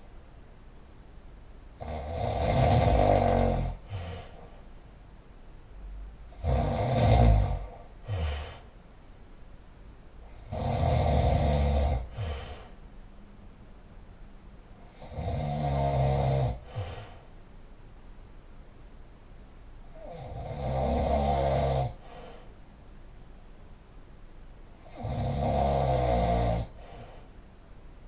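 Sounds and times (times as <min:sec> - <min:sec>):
person snoring loudly: 0:01.8 - 0:04.4, 0:06.3 - 0:08.7, 0:10.3 - 0:12.8, 0:14.8 - 0:17.2, 0:19.9 - 0:22.3, 0:24.8 - 0:27.2.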